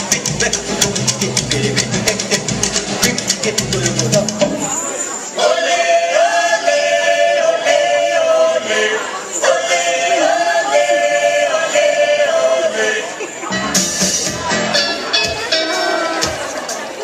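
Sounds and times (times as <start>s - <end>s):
drumming: 0.0s - 4.8s, 13.5s - 17.0s
voices singing long held notes: 0.0s - 13.3s, 14.7s - 16.8s.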